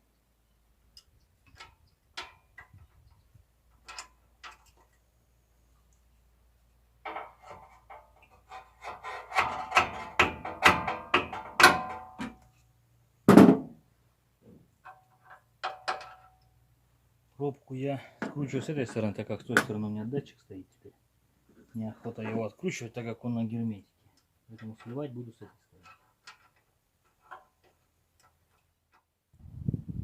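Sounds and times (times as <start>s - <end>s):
heavy thunk: 13.3s - 13.8s.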